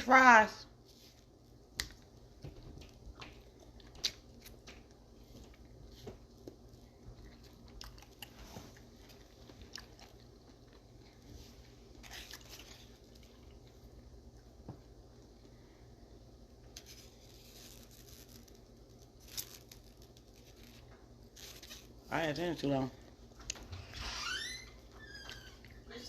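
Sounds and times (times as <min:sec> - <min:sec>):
person chewing with crunches: 0:01.0 - 0:14.6.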